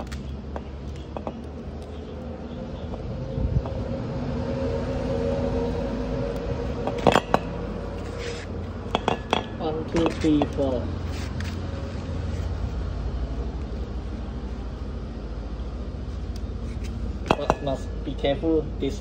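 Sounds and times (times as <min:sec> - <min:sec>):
two-tone motor hum: 0:00.0 - 0:09.6.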